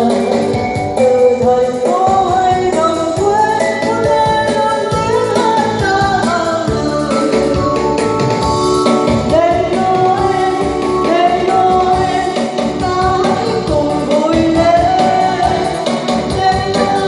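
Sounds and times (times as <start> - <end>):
instrumental accompaniment with beat: 0.0 - 17.0.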